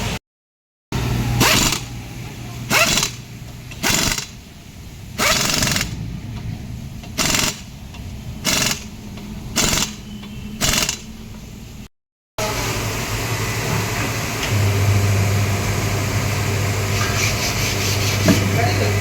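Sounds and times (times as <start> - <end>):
power tool bursts: 1.4 - 1.9, 2.7 - 3.2, 3.8 - 4.4, 5.2 - 6.0, 7.2 - 7.7, 8.4 - 8.9, 9.6 - 10.0, 10.6 - 11.1.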